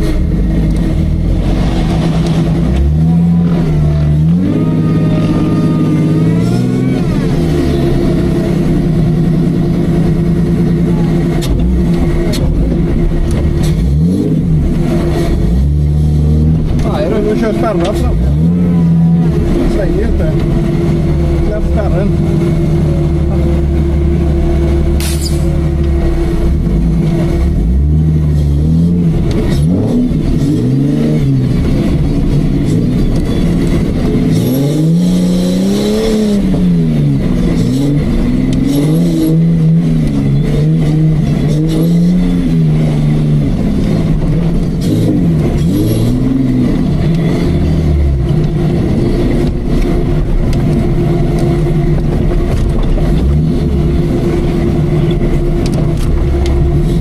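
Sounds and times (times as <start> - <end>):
engine revving under load: 0.0 - 57.0
steady whine: 0.0 - 57.0.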